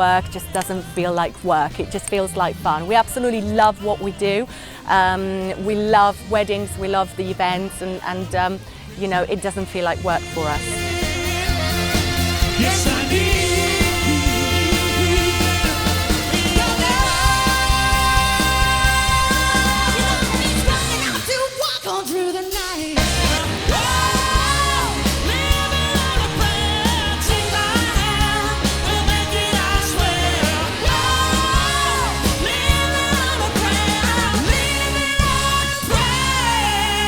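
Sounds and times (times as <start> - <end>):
live pop-rock band playing: 0.0 - 37.0
lead singer singing: 10.0 - 37.0.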